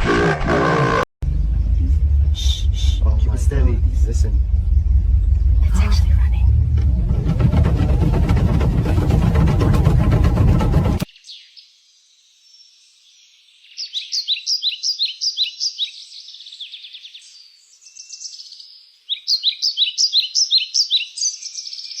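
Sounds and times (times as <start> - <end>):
bird chirping: 11.1 - 22.0.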